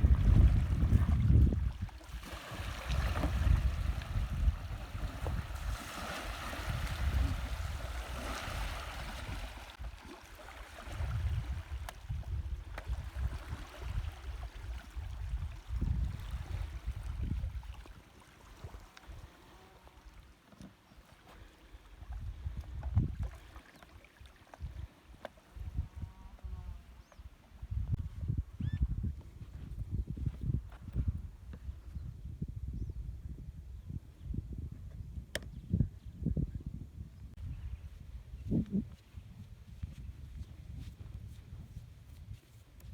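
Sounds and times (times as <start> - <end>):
wind buffeting microphone: 0.0 - 10.0, 10.8 - 18.0, 21.9 - 23.5, 25.5 - 42.9
water splashing around boat: 0.0 - 25.7.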